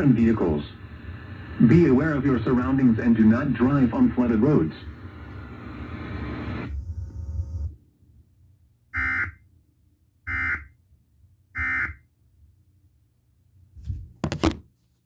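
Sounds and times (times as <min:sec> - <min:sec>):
broadcast hum and hiss: 0:00.0 - 0:07.8, 0:13.8 - 0:14.6.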